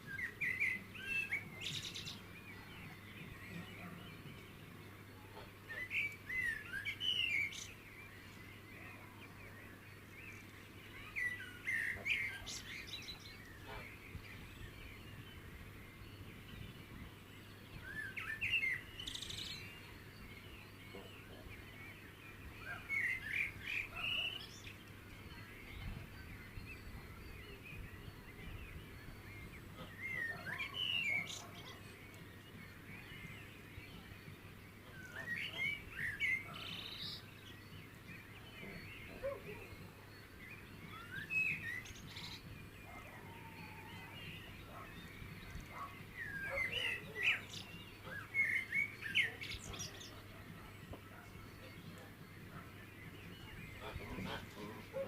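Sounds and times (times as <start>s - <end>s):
songbird chirping: 0.0s - 55.0s.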